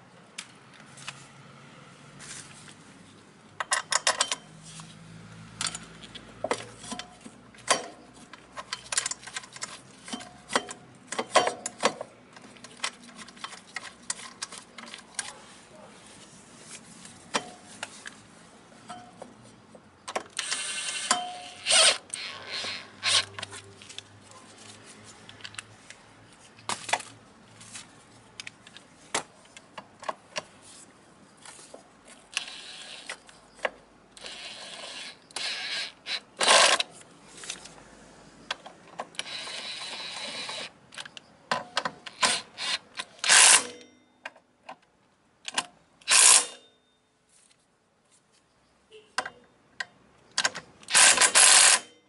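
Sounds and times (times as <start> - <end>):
metal tools clinking and knocking: 3.6 - 4.5
ratchet wrench clicking: 20.3 - 23.4, 46.0 - 46.6, 50.8 - 51.9.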